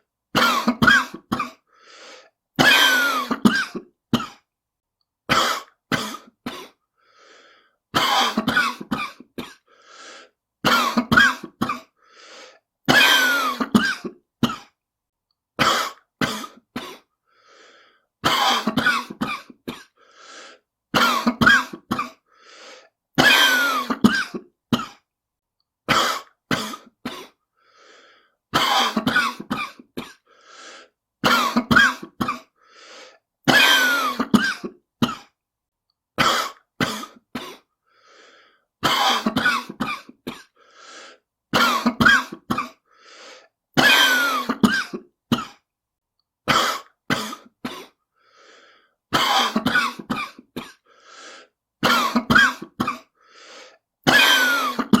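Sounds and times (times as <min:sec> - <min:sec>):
person coughing hard: 0:00.3 - 0:01.7, 0:02.6 - 0:04.5, 0:05.3 - 0:06.8, 0:07.9 - 0:09.8, 0:10.6 - 0:12.0, 0:12.8 - 0:14.8, 0:15.6 - 0:17.1, 0:18.2 - 0:20.0, 0:20.9 - 0:22.3, 0:23.2 - 0:25.1, 0:25.9 - 0:27.4, 0:28.5 - 0:30.3, 0:31.2 - 0:32.6, 0:33.5 - 0:35.4, 0:36.2 - 0:37.7, 0:38.8 - 0:40.6, 0:41.5 - 0:42.9, 0:43.8 - 0:45.6, 0:46.4 - 0:48.0, 0:49.1 - 0:50.9, 0:51.8 - 0:53.2, 0:54.0 - 0:55.0
faint breaths: 0:01.7 - 0:02.4, 0:06.9 - 0:07.8, 0:09.6 - 0:10.4, 0:12.0 - 0:12.7, 0:17.0 - 0:18.2, 0:19.9 - 0:20.7, 0:22.2 - 0:23.0, 0:27.5 - 0:28.4, 0:30.2 - 0:31.0, 0:32.6 - 0:33.3, 0:37.8 - 0:38.7, 0:40.5 - 0:41.3, 0:42.8 - 0:43.6, 0:47.9 - 0:49.0, 0:50.8 - 0:51.6, 0:53.1 - 0:53.8.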